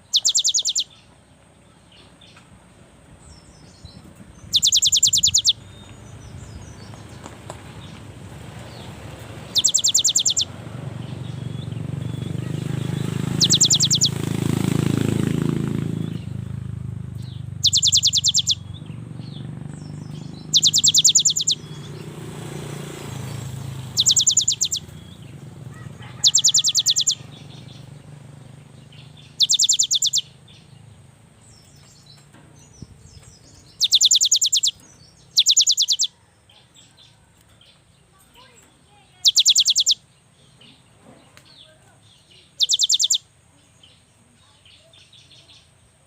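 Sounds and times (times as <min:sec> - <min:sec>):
bird trilling high notes: 0:00.1 - 0:00.9, 0:04.6 - 0:05.6, 0:09.5 - 0:10.5, 0:11.3 - 0:14.2, 0:17.6 - 0:18.8, 0:19.9 - 0:21.9, 0:23.9 - 0:25.2, 0:26.0 - 0:27.6, 0:29.2 - 0:30.3, 0:33.7 - 0:36.1, 0:39.2 - 0:40.0, 0:42.6 - 0:43.2
low background rumble: 0:02.7 - 0:22.1.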